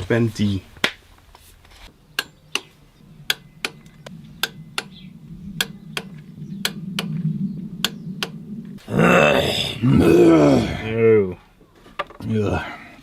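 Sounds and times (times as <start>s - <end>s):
low steady hum: 1.9s - 11.1s.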